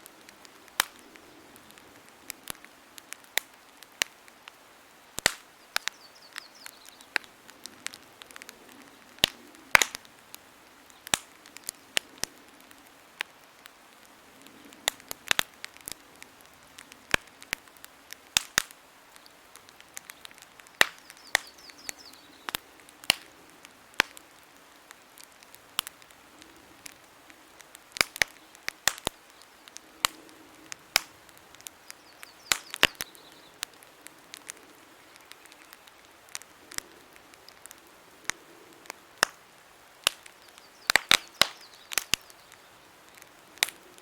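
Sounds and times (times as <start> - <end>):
campfire crackling and popping: 0.0 - 44.0
low hiss of flame: 0.0 - 44.0.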